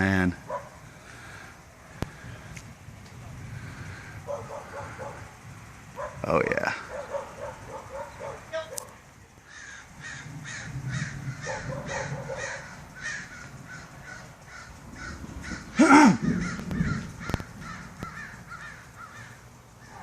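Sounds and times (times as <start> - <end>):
birds harsh calls: 3.3 - 20.0
loud bird call rising and falling: 9.4 - 20.0.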